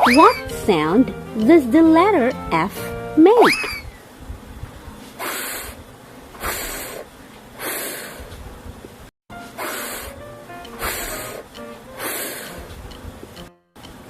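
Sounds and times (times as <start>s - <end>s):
soft background music: 0.0s - 3.5s, 9.3s - 14.0s
voice hissing fff sound: 5.2s - 5.8s, 6.4s - 8.3s, 9.5s - 12.7s.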